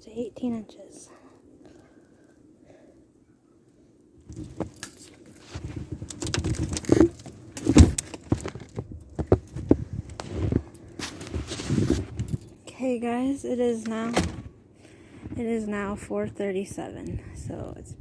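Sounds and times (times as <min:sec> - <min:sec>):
rustling: 0:04.2 - 0:12.5.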